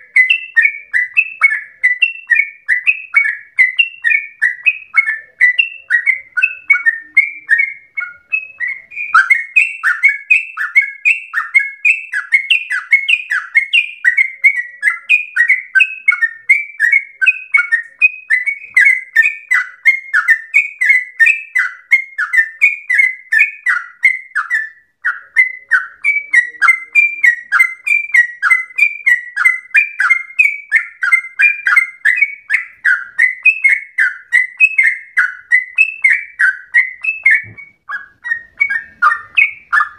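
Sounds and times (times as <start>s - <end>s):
bird singing bubbling notes: 0.0s - 39.9s.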